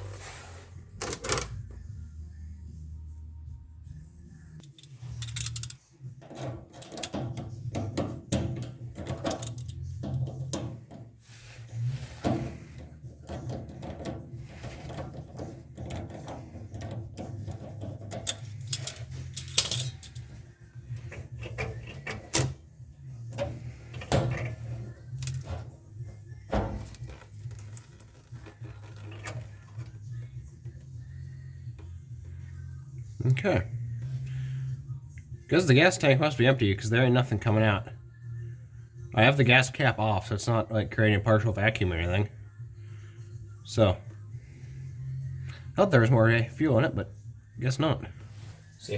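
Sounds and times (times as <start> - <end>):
low steady hum: 0.0 - 48.9
hand tools clinking on metal: 4.6 - 10.5, 15.8 - 22.6.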